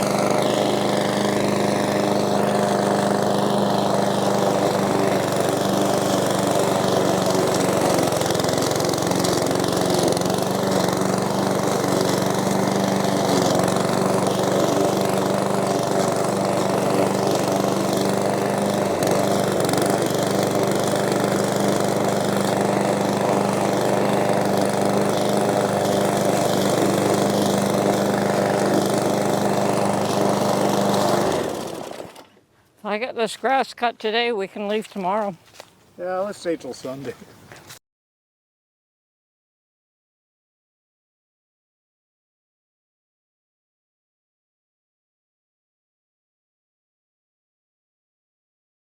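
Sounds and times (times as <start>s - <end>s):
lawn mower engine running: 0.0s - 33.7s.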